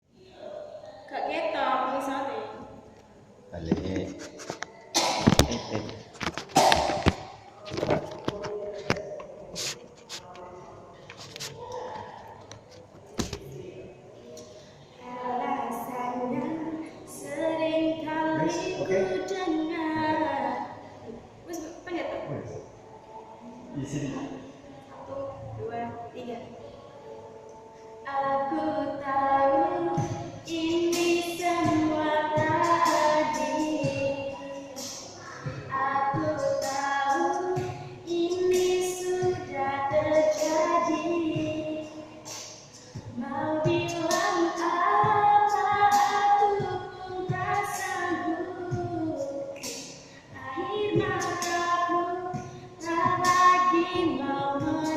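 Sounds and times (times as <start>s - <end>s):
woman singing slow melody: 23.0s - 54.9s.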